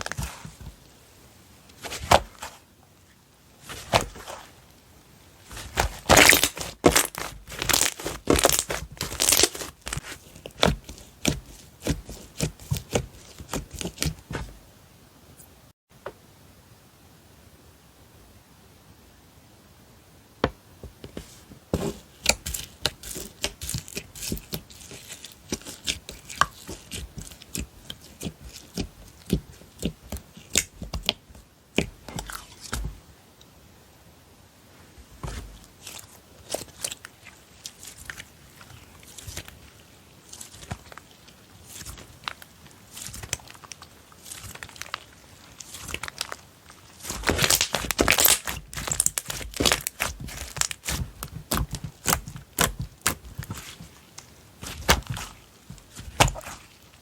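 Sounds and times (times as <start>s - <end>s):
slime clicking and popping: 47.0s - 53.7s.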